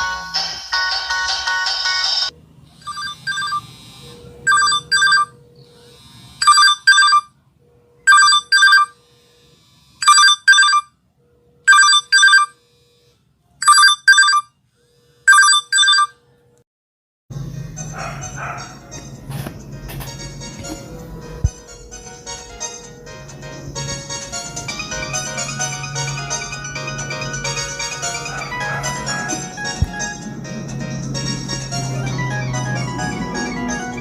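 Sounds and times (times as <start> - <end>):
phone ringtone double rings: 2.8 - 5.5, 6.4 - 7.3, 8.1 - 9.0, 10.0 - 11.0, 11.6 - 12.6, 13.6 - 14.6, 15.2 - 16.3.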